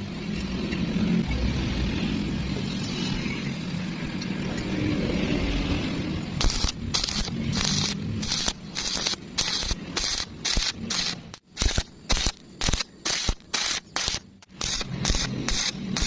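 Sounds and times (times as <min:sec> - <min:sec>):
welding arc crackling: 0:06.3 - 0:16.0.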